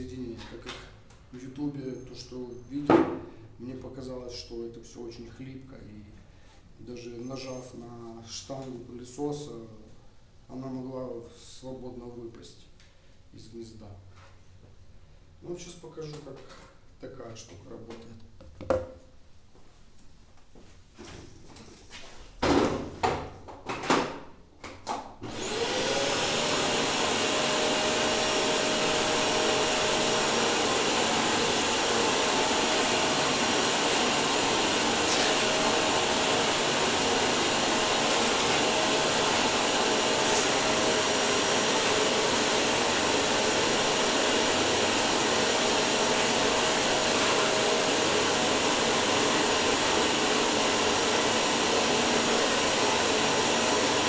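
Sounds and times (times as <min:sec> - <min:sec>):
vacuum cleaner motor whining: 0:25.2 - 0:54.0.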